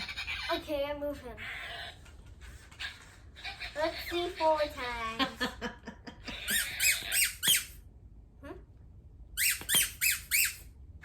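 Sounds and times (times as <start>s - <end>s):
squeaky toy squeaks: 6.3s - 7.8s, 9.4s - 10.8s.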